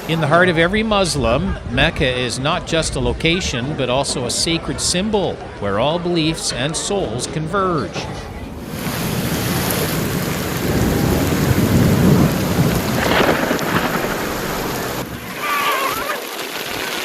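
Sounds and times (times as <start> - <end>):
heavy rain pouring: 8.5 - 17.0
rolling thunder: 8.6 - 17.0.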